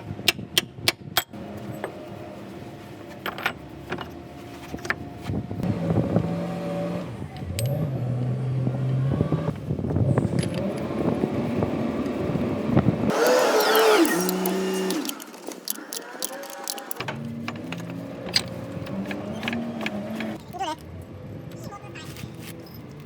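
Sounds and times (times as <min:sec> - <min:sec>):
motor humming: 0:13.1 - 0:17.1
clicks and knocks: 0:13.1 - 0:20.4.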